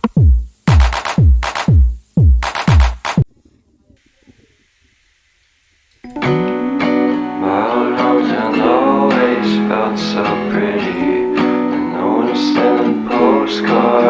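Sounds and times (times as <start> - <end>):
acoustic guitar strumming: 6.0 - 14.0.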